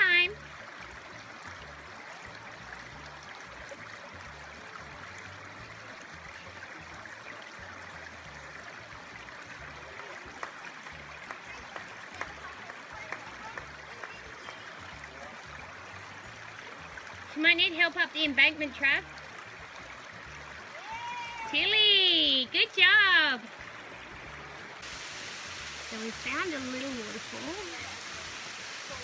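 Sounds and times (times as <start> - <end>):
creek running over rocks: 0.0 - 29.0.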